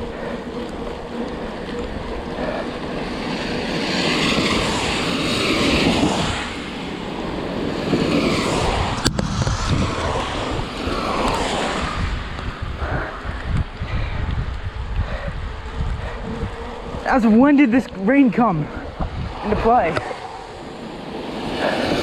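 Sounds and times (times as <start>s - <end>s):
wind buffeting microphone: 0.0s - 22.0s.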